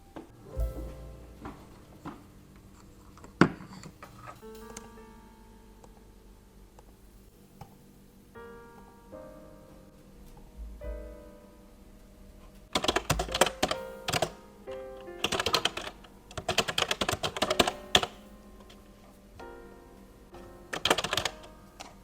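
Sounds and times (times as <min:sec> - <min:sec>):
soft background music: 0:00.0 - 0:03.4, 0:04.2 - 0:22.0
typing on keyboard: 0:12.7 - 0:14.4, 0:15.2 - 0:18.2, 0:20.7 - 0:22.0.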